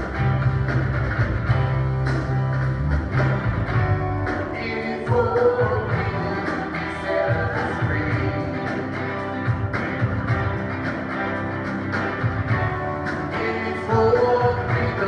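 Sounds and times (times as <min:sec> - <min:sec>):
bass guitar: 0:00.0 - 0:15.0
guitar: 0:00.0 - 0:15.0
sharp regular beats: 0:00.0 - 0:15.0
people singing: 0:04.3 - 0:09.2, 0:13.2 - 0:15.0.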